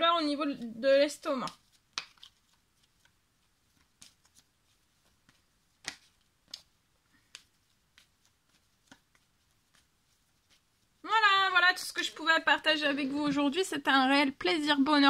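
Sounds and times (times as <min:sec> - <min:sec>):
cards clicking and tapping: 0:01.3 - 0:10.6.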